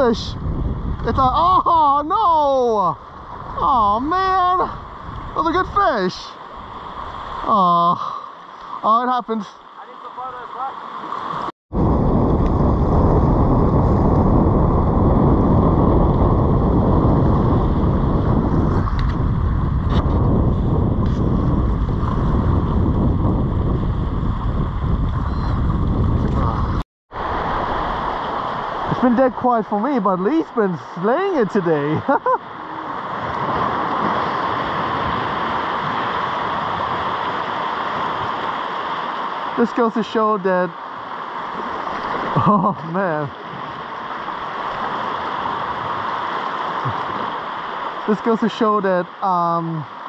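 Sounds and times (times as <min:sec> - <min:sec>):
wind buffeting microphone: 0:00.0 - 0:07.5, 0:11.7 - 0:29.4, 0:31.1 - 0:39.2, 0:43.4 - 0:47.8
sea surf washing against rocks: 0:00.0 - 0:07.6, 0:08.4 - 0:50.0.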